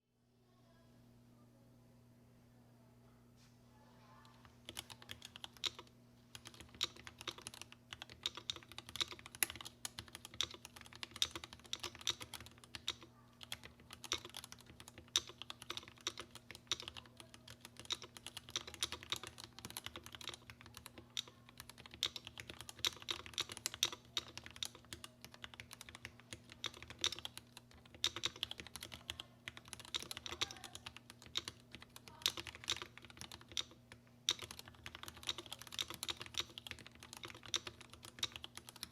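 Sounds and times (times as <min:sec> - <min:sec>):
mechanical keyboard typing: 0:04.4 - 0:38.9.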